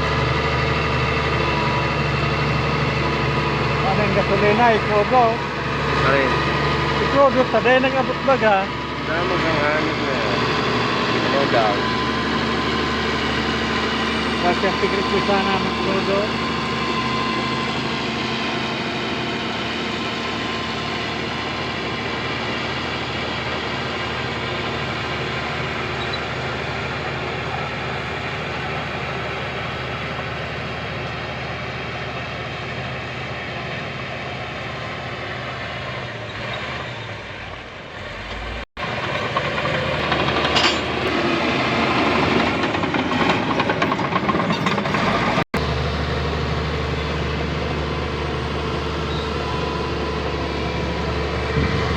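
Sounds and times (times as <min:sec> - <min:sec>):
machinery rattling and clanking: 0:00.0 - 0:30.2, 0:38.1 - 0:45.9, 0:49.0 - 0:51.9
diesel construction machinery running: 0:00.0 - 0:51.9.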